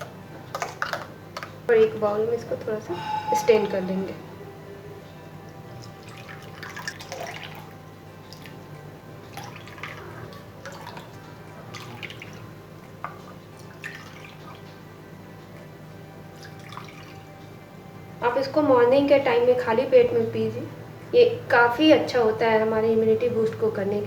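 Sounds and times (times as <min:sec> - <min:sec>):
liquid dripping through a strainer: 0:05.7 - 0:14.8, 0:16.4 - 0:17.4.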